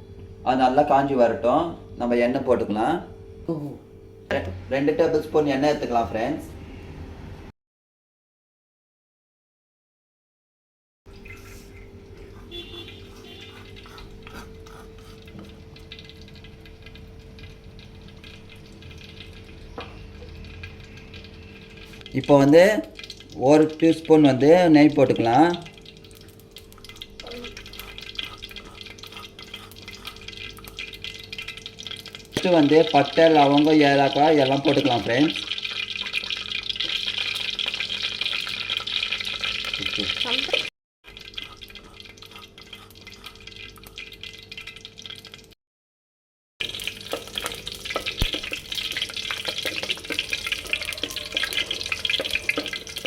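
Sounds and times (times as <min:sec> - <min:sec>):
oil sizzling in a pot: 0:14.6 - 0:45.6, 0:46.6 - 0:53.0
small crackling pops: 0:47.1 - 0:50.1.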